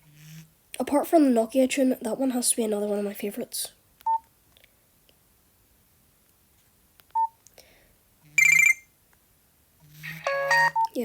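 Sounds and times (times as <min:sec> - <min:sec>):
phone beep: 0:07.2 - 0:07.4, 0:08.4 - 0:08.9, 0:10.1 - 0:11.0
buzzy phone ringtone: 0:08.4 - 0:08.9, 0:10.0 - 0:10.9.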